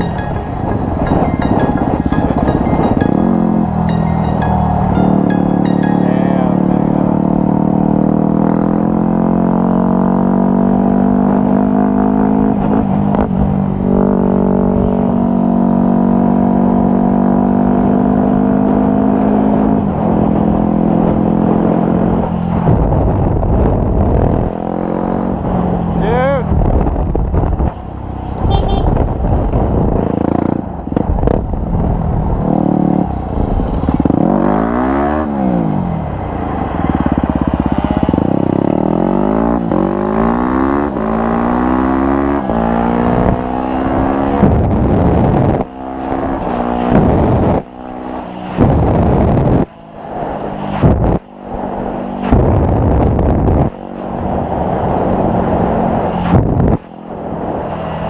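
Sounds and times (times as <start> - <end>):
dirt bike engines revving: 23.6 - 26.8, 32.3 - 58.0.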